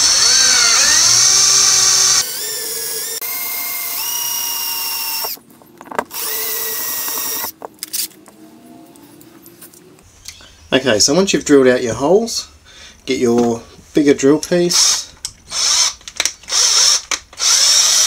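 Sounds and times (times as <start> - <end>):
electric drill whining: 0.0 - 5.4, 6.1 - 7.6, 15.5 - 18.0.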